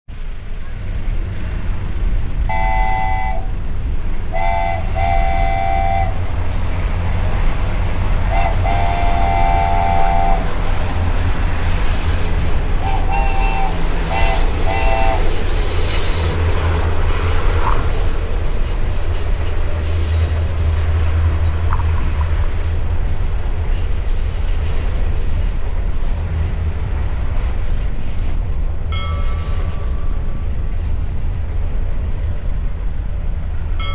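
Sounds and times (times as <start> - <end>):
train rumbling: 0.1 - 33.9
train horn: 2.4 - 3.7, 4.3 - 6.6, 8.1 - 11.2, 12.8 - 16.0.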